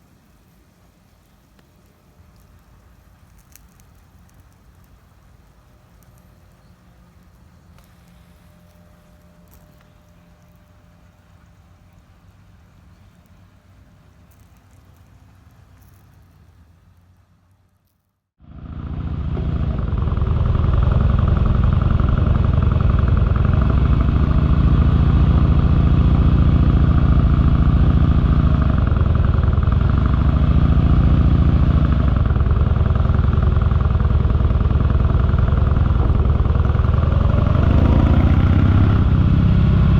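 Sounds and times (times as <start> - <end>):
motorcycle engine running: 5.9 - 11.6, 18.4 - 39.9.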